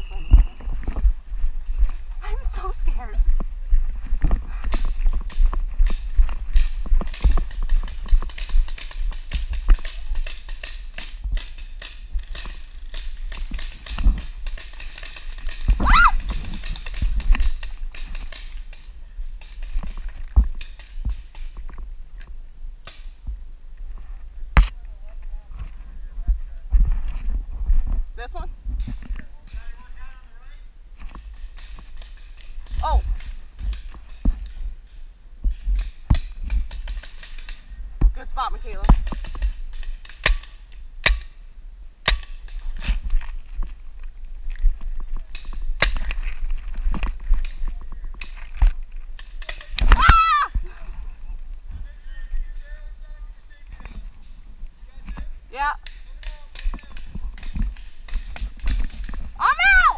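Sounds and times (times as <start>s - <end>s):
paintball equipment clicks and knocks: 4.2s - 23.1s, 31.0s - 41.4s, 42.0s - 50.0s, 55.0s - 59.3s
paintball markers firing: 42.0s - 42.7s.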